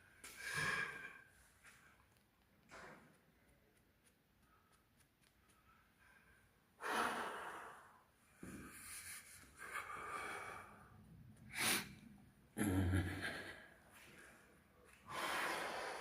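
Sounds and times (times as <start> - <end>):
person breathing hard: 0.2 - 1.3, 6.0 - 12.0, 14.9 - 16.0.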